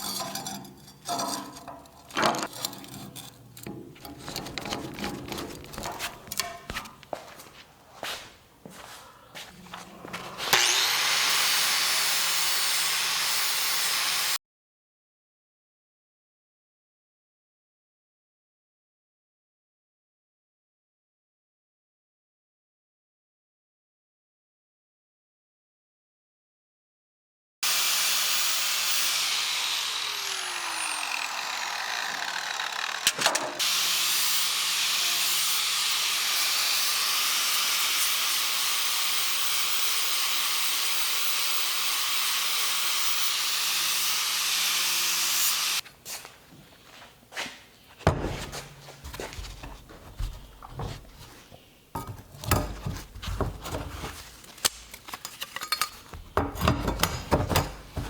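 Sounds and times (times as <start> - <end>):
knocks and clatter of parts: 0.0 - 7.6, 33.0 - 33.6, 48.1 - 58.0
shop tool hissing and humming: 10.2 - 14.4, 27.6 - 45.8.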